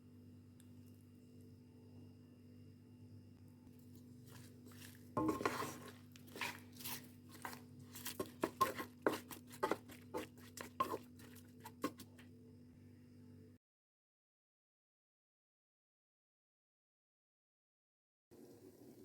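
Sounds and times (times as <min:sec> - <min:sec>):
clicks scrapes and crinkles: 0:03.8 - 0:12.3.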